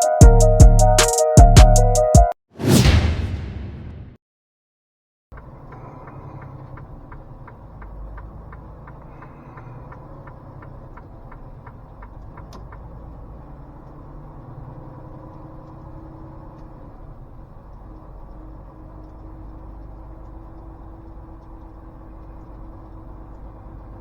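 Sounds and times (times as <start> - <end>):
truck engine rumble: 5.4 - 24.0.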